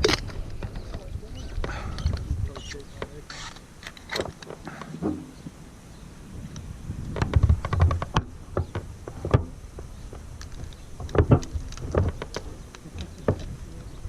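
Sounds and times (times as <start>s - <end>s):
clicks knocks and scrapes: 7.1s - 13.6s.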